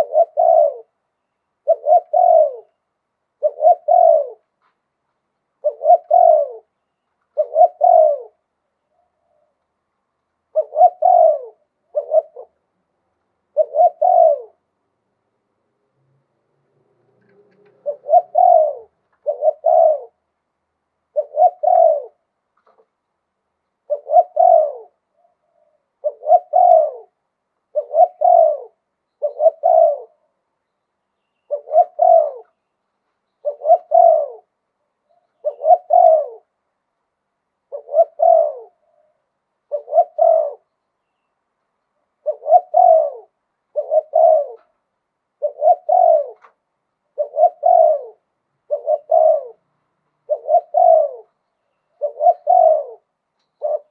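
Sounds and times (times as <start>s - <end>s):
dove cooing: 0.0s - 1.0s, 1.6s - 4.7s, 5.5s - 9.6s, 10.4s - 12.7s, 13.4s - 14.8s, 17.0s - 20.3s, 21.1s - 22.9s, 23.8s - 30.4s, 31.4s - 32.6s, 33.4s - 36.6s, 37.6s - 40.7s, 42.0s - 53.9s.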